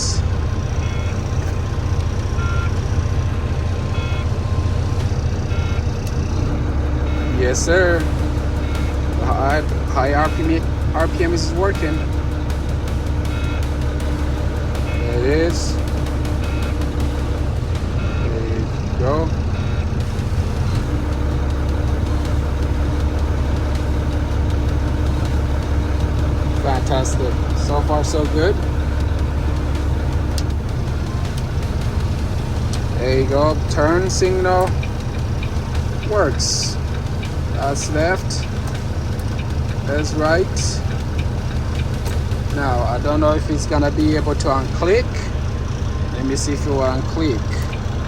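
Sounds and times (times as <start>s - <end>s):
steady hum: 0.0s - 47.4s
diesel truck engine idling: 0.0s - 48.0s
short electronic beeps: 0.8s - 1.3s, 2.4s - 2.8s, 3.8s - 12.5s, 18.0s - 18.7s.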